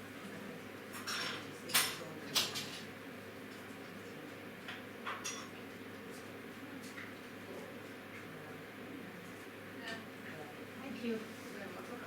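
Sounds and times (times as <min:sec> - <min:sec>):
steady room hum: 0:00.0 - 0:12.0
dishes and cutlery clinking: 0:00.9 - 0:02.9, 0:05.1 - 0:05.6.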